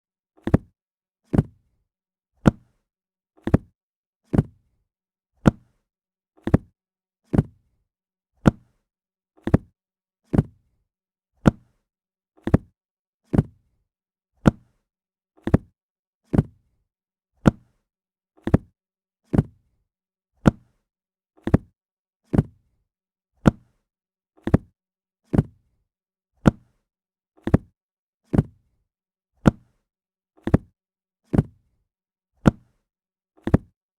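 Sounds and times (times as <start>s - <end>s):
book dropped with dull thud: 1.3s - 1.6s, 4.3s - 4.6s.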